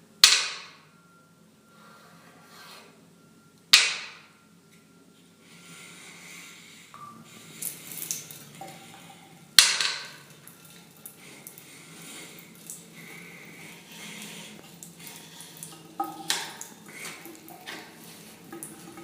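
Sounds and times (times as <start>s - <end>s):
wooden pieces knocking together: 9.6s - 10.2s.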